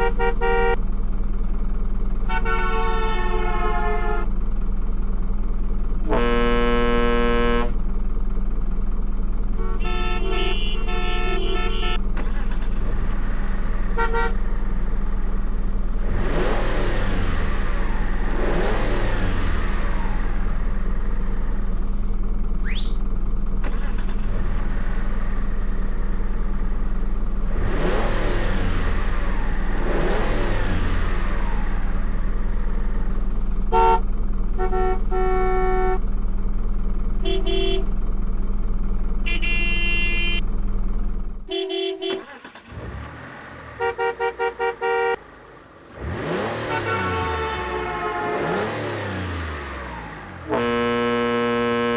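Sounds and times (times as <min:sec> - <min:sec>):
car horn toots: 0:00.0 - 0:00.8, 0:02.2 - 0:04.3, 0:06.0 - 0:07.8, 0:09.5 - 0:12.0, 0:13.9 - 0:14.5, 0:33.7 - 0:36.0, 0:37.2 - 0:38.0, 0:39.2 - 0:40.4, 0:41.5 - 0:42.4, 0:43.8 - 0:45.2, 0:46.6 - 0:48.8, 0:50.4 - 0:51.9
rising whistle: 0:22.6 - 0:23.0.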